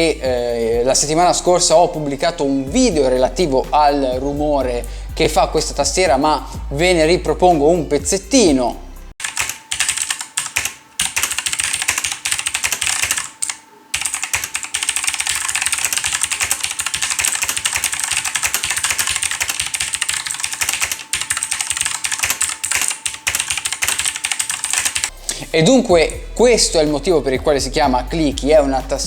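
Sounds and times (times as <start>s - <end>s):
fast typing on clicky keyboard: 9.2s - 25.1s.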